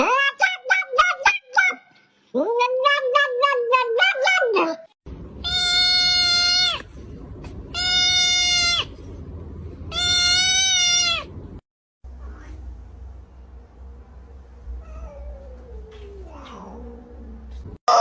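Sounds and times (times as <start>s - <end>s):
animal high cries: 5.4s - 6.9s, 7.8s - 8.9s, 9.9s - 11.3s.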